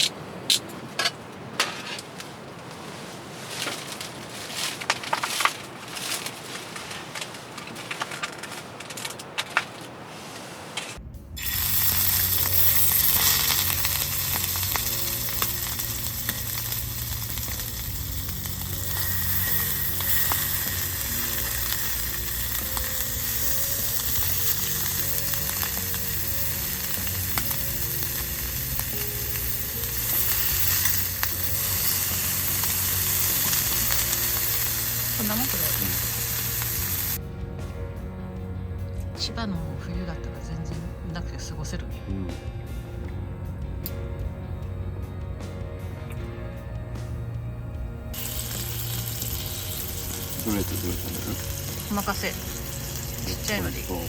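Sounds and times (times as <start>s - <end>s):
meat sizzling on a grill: 11.4s - 37.2s, 48.1s - 54.0s.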